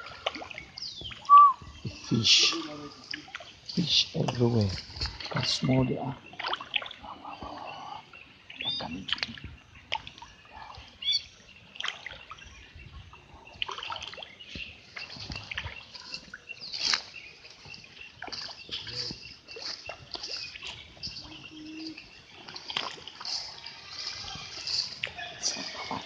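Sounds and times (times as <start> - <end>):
fish splashing in pond: 0.0 - 1.3, 6.2 - 7.5, 11.7 - 12.5, 13.5 - 26.0
birds chirping: 0.0 - 26.0.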